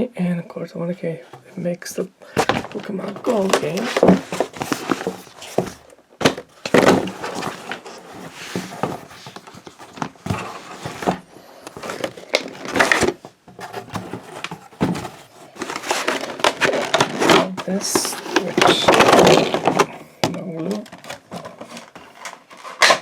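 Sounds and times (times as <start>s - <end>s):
packaging rustling and scraping: 1.9s - 23.0s.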